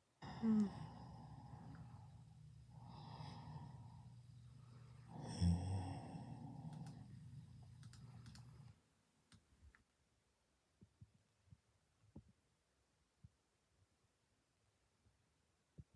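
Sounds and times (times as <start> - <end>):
person snoring: 0.2 - 2.1, 2.7 - 4.0, 5.0 - 7.0.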